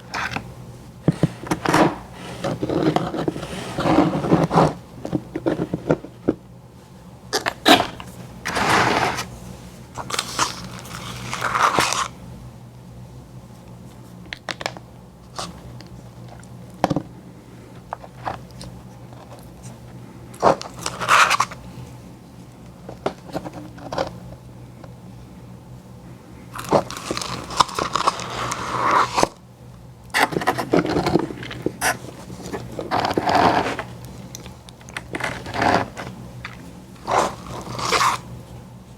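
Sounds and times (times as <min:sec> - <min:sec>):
biting and chewing ice cream: 0:26.6 - 0:29.3, 0:30.1 - 0:38.3.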